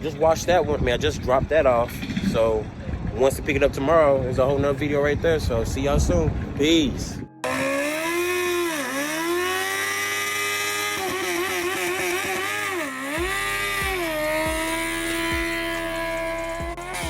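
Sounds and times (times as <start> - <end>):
music with heavy bass thump: 1.6 - 3.8, 13.1 - 17.0
motorcycle engine revving high: 7.4 - 17.0.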